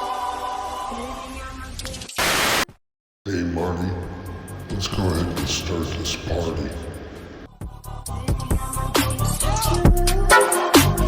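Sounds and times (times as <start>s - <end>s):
hip hop music: 3.6s - 11.0s.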